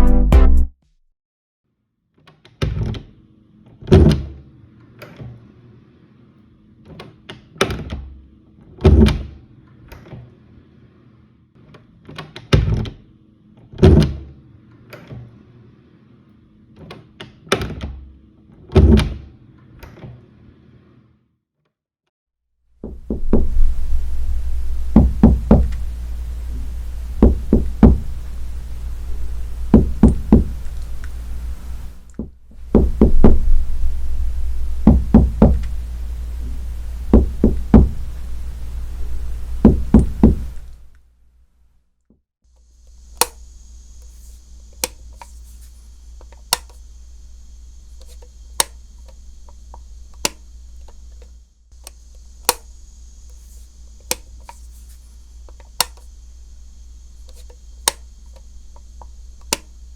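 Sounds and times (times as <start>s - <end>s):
knocking in quick raps: 24.7s - 26.0s, 27.2s - 35.9s, 37.1s - 38.4s, 39.5s - 40.7s
sharp taps: 24.8s - 26.0s, 27.1s - 28.6s, 29.6s - 33.7s, 34.8s - 35.9s, 37.1s - 38.3s, 39.6s - 40.7s.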